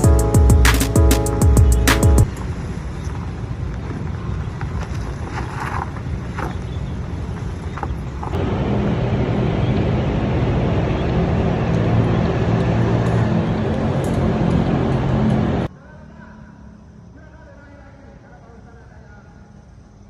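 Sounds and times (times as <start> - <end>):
road noise: 0.0 - 20.0
vehicle engine running: 8.4 - 15.7.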